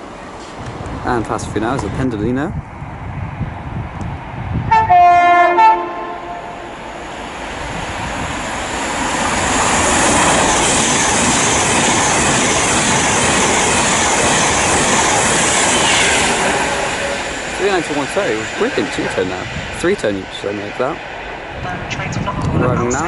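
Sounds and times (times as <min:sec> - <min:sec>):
train rushing past: 0:00.0 - 0:23.0
two-tone train horn: 0:04.7 - 0:06.7.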